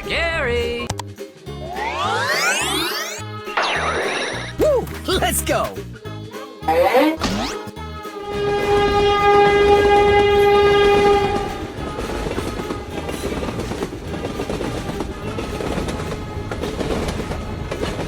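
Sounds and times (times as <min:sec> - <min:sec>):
train running on rails: 0:01.4 - 0:03.2, 0:08.1 - 0:18.0
train horn blowing: 0:08.2 - 0:12.9.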